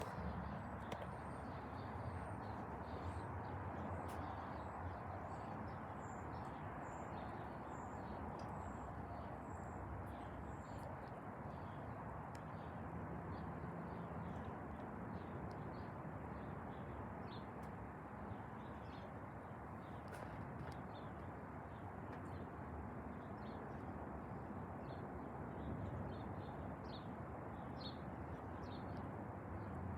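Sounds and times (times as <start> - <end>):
distant airport noise: 0.0 - 16.9.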